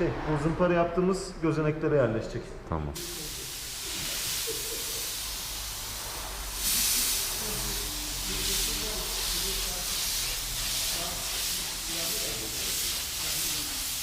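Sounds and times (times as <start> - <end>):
paint spray gun hissing: 3.0 - 14.0.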